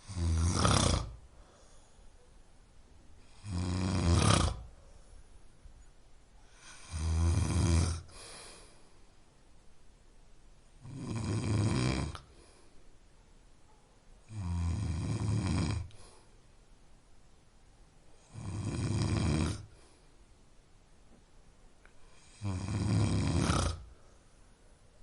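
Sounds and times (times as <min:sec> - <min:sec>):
person snoring: 0:00.0 - 0:01.2, 0:03.2 - 0:04.7, 0:06.5 - 0:08.8, 0:10.8 - 0:12.4, 0:14.3 - 0:16.2, 0:18.2 - 0:19.8, 0:22.1 - 0:23.9.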